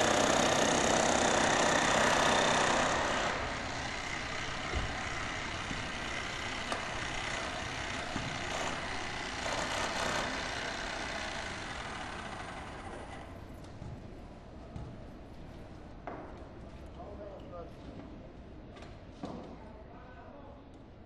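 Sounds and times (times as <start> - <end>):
street and machinery noise: 0.0 - 14.8.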